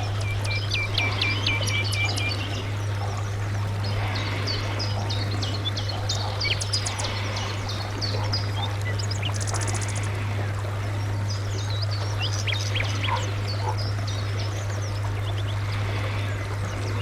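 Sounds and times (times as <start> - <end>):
bird trill: 0.0 - 2.7
small birds chirping: 0.0 - 17.0
steady low hum: 0.0 - 17.0.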